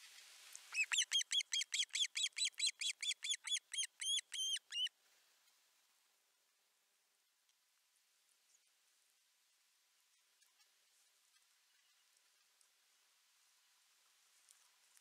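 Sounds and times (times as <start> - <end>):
osprey whistled calls: 0.7 - 4.9.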